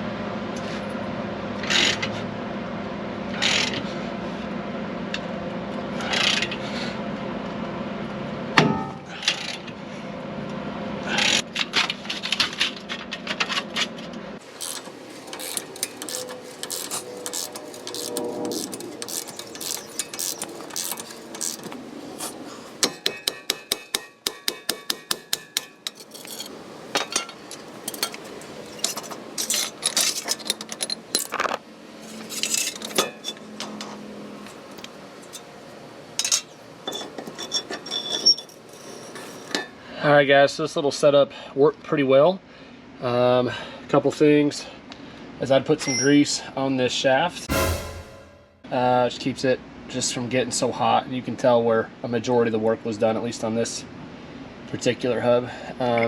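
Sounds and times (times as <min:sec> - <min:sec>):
metal tools clinking on wheel hub: 0:14.4 - 0:35.6, 0:36.2 - 0:39.8.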